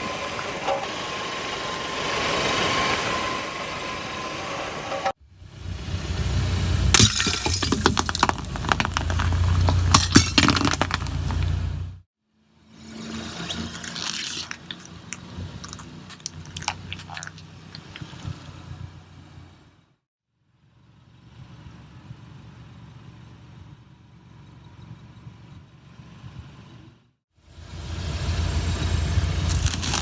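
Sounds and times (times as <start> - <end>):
low car engine hum: 0.0 - 12.0, 20.6 - 30.0
objects crackling under tyre: 7.0 - 11.8, 13.4 - 18.6, 29.4 - 30.0.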